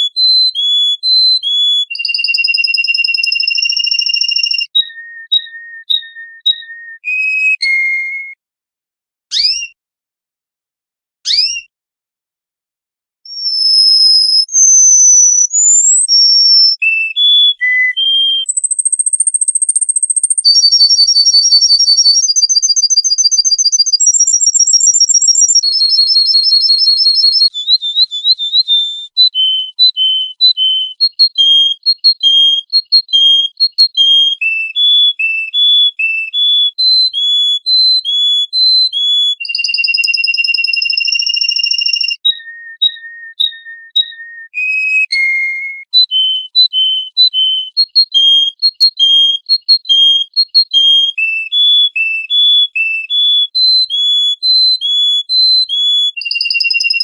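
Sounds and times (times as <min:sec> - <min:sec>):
songbird singing whistles: 0:00.0 - 0:08.4, 0:09.3 - 0:09.8, 0:11.3 - 0:11.7, 0:13.3 - 0:57.0.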